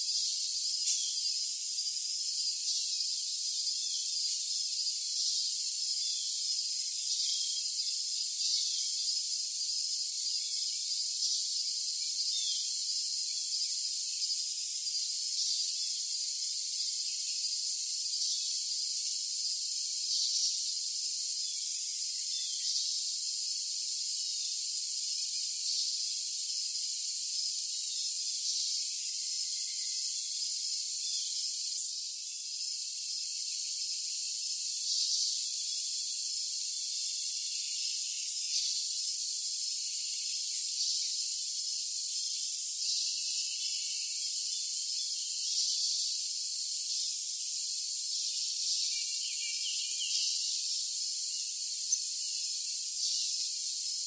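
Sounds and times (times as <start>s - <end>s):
crickets trilling: 0.0s - 54.0s
thin steady high tone: 48.5s - 50.7s
songbird chirps: 48.6s - 50.6s.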